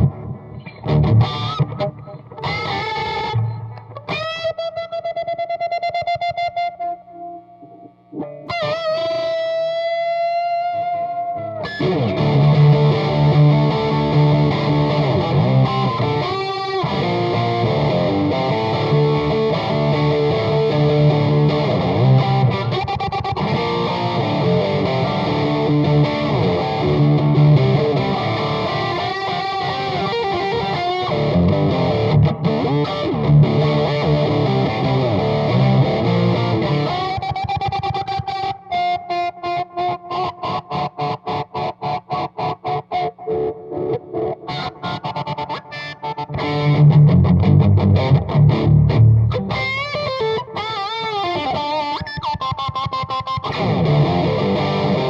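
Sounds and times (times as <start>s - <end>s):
distorted electric guitar: 0.0s - 55.0s.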